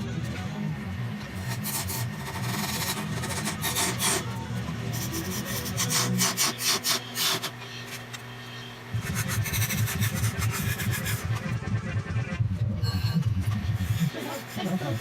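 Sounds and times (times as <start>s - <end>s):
gouge scraping spinning wood: 1.4s - 4.3s, 9.0s - 12.1s
low throbbing: 8.9s - 15.0s.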